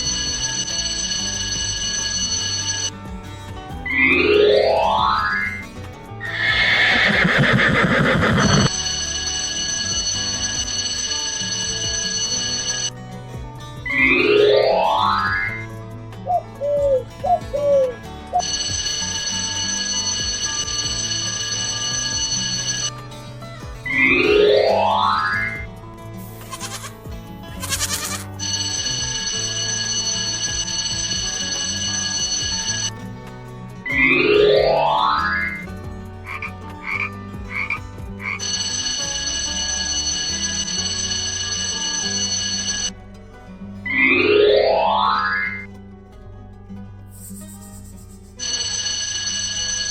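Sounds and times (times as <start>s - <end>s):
alarm clock ringing: 0.0s - 3.0s, 6.3s - 12.9s, 18.4s - 22.9s, 27.7s - 33.0s, 36.3s - 42.9s, 48.4s - 49.9s
background music: 0.0s - 49.9s
rising whoosh: 6.2s - 8.7s
frog croaking and trilling: 6.3s - 8.7s.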